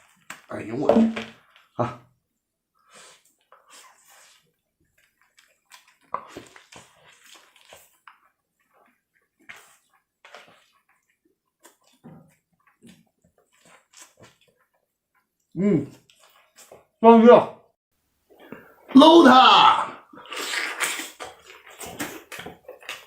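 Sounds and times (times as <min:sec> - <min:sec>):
wet smacking and chewing: 0:03.0 - 0:16.8, 0:20.2 - 0:23.0.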